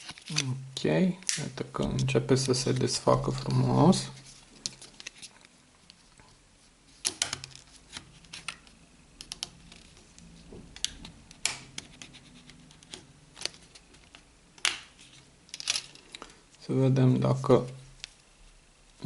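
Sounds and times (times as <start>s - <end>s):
plastic clips clicking: 10.7s - 14.9s.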